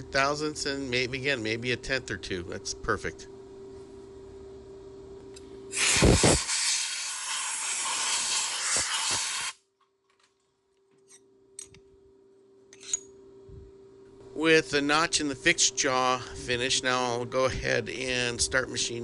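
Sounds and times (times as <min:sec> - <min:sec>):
steady low hum: 0:00.0 - 0:08.6, 0:10.3 - 0:19.0
compressed air blow gun hissing: 0:05.7 - 0:09.6.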